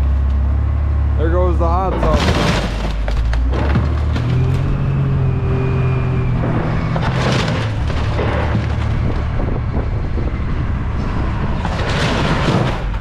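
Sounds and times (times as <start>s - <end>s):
diesel engine running: 0.0s - 13.0s
cracking and crunching impacts: 1.8s - 5.4s, 6.2s - 13.0s.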